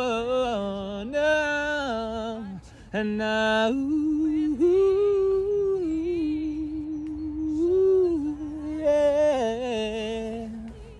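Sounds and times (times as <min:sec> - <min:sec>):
person singing wordless a cappella: 0:00.0 - 0:10.9.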